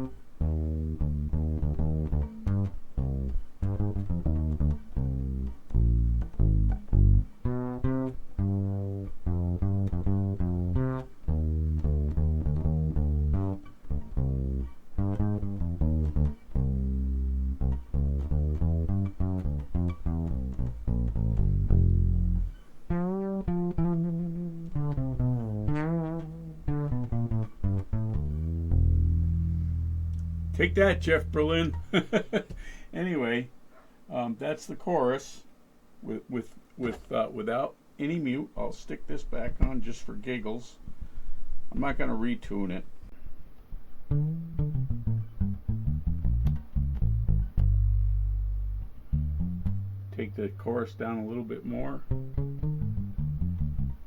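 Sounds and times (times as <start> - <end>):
fretless bass with chorus: 0.0 - 32.8, 38.8 - 54.0.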